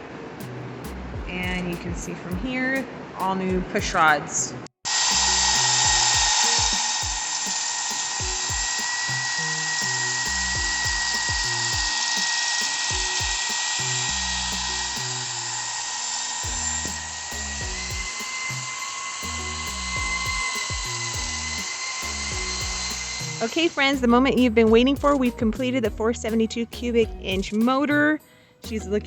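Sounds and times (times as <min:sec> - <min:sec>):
background music with bass: 0:00.4 - 0:02.5, 0:05.1 - 0:07.2, 0:08.2 - 0:12.0, 0:12.9 - 0:15.5, 0:16.4 - 0:27.7, 0:28.6 - 0:29.0
power tool whining: 0:04.9 - 0:23.8.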